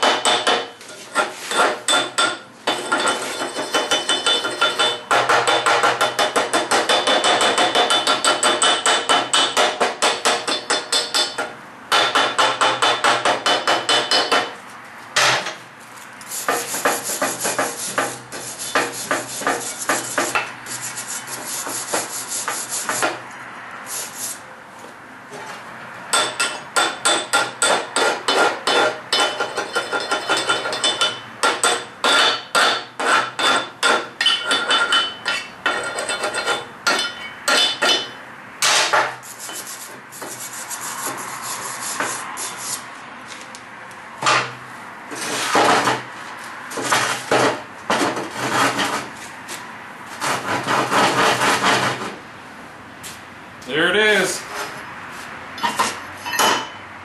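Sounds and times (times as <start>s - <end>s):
brush scraping on steel: 0.8s - 1.9s, 15.8s - 23.2s, 23.9s - 24.4s, 39.2s - 42.9s.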